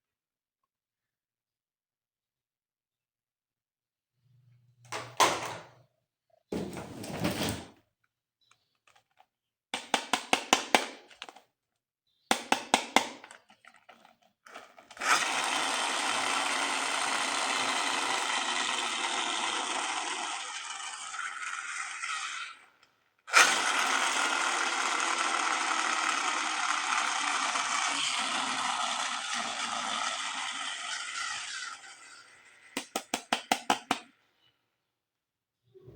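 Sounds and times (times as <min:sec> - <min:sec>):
toy gun motor whirring: 0:14.5 - 0:33.1.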